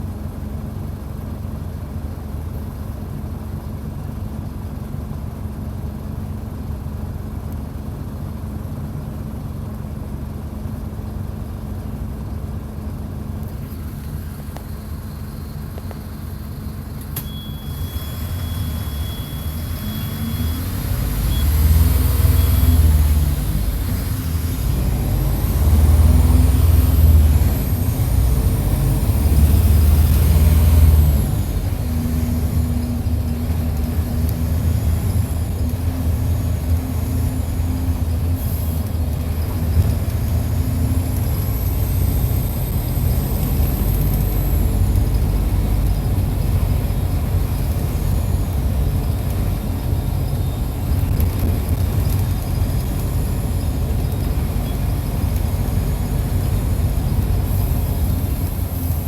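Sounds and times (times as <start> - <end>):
bus diesel engine running: 0.0 - 59.0
faint high whine: 14.3 - 23.4.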